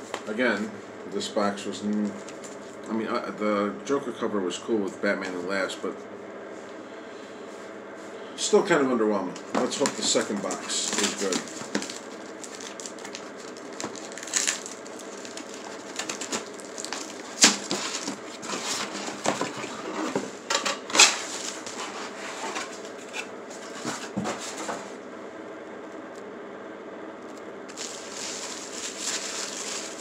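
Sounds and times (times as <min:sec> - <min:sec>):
comics rustling and scraping: 0:09.4 - 0:25.0, 0:27.7 - 0:30.0.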